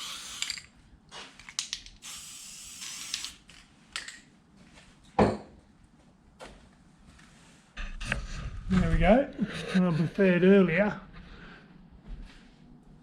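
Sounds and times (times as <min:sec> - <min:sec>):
spray paint can hissing: 0:00.0 - 0:00.7, 0:02.0 - 0:03.4.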